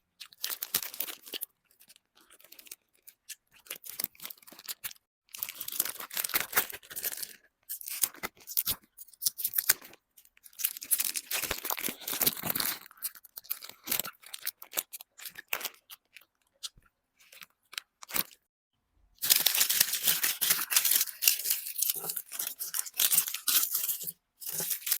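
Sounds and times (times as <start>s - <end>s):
chocolate wrapper crackling: 10.5s - 16.4s, 19.2s - 25.0s.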